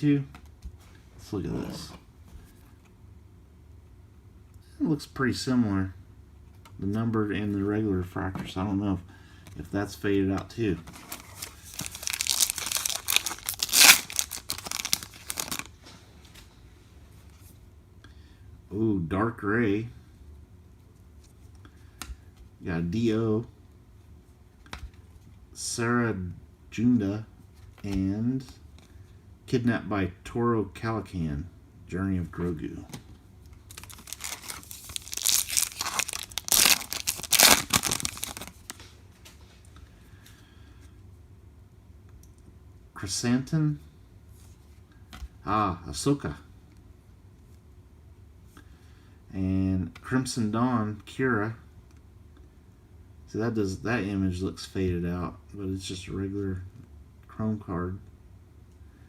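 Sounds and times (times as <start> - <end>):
plastic wrapper crinkling and tearing: 11.0 - 15.7, 33.6 - 38.8.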